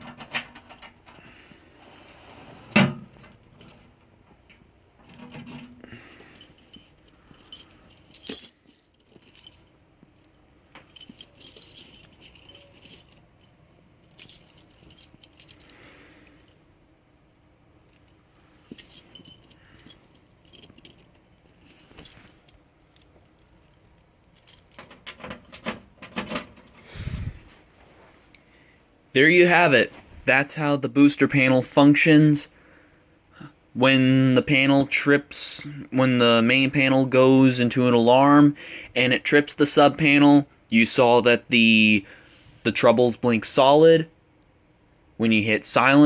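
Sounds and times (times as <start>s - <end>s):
metallic jingling rattles: 3.0s - 4.1s, 5.0s - 16.6s, 17.9s - 27.3s.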